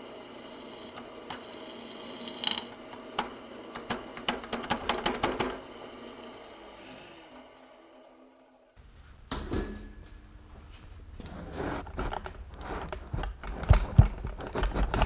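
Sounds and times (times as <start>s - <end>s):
metal tools clicking and clinking: 8.8s - 10.5s
low machine hum: 8.8s - 15.0s.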